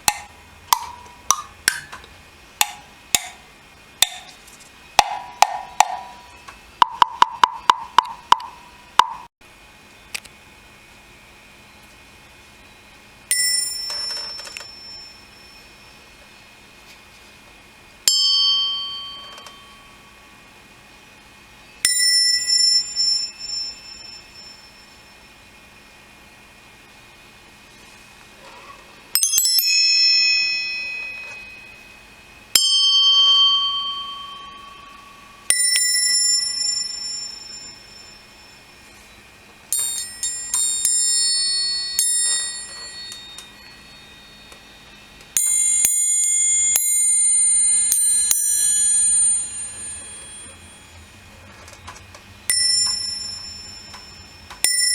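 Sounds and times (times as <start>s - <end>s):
small metal bells ringing: 13.3s - 16.2s, 18.1s - 20.3s, 21.8s - 25.4s, 29.2s - 39.0s, 39.7s - 51.1s, 52.5s - 54.9s.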